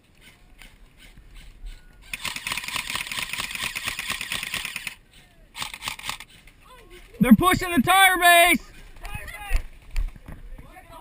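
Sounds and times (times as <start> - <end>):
airsoft rifle full-auto burst: 2.1 - 5.0, 5.6 - 6.2.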